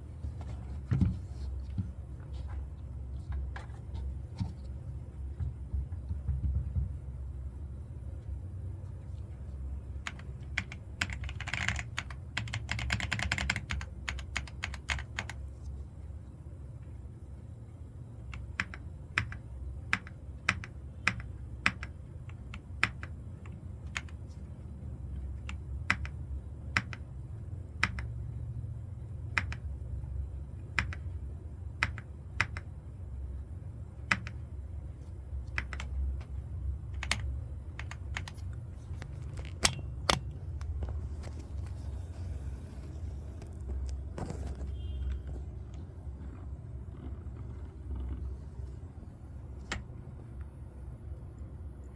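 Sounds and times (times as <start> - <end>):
low steady hum: 0.0 - 51.9
mechanical keyboard keystrokes: 10.0 - 15.5, 18.3 - 24.3, 25.4 - 27.1, 27.8 - 28.2, 29.3 - 29.7, 30.7 - 31.1, 31.8 - 32.7, 34.0 - 34.4, 35.4 - 40.8.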